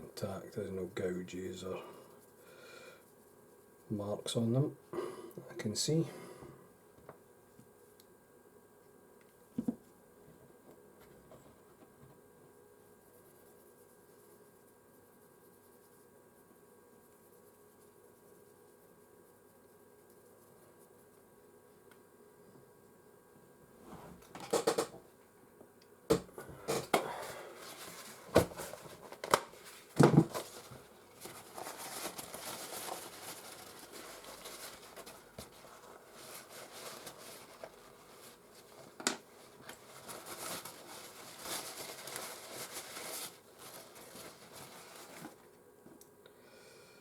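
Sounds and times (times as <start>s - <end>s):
plastic parts clicking and knocking: 24.3s - 25.0s
light scratchy rubbing: 29.6s - 45.4s.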